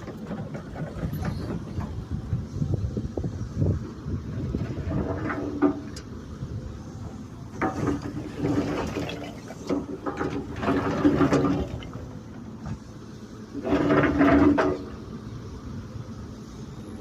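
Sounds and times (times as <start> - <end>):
diesel engine under load: 0.0 - 17.0
hydraulics whining: 0.0 - 17.0.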